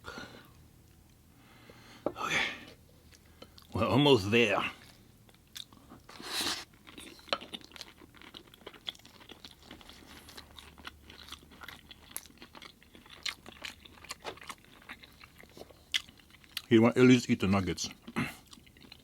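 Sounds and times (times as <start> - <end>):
person chewing food: 2.7 - 3.8, 4.8 - 16.7, 17.9 - 19.0.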